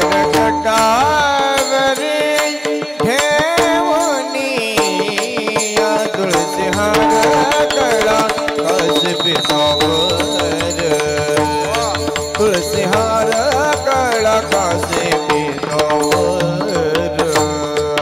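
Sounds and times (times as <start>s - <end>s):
person singing wordless melody: 0.0s - 18.0s.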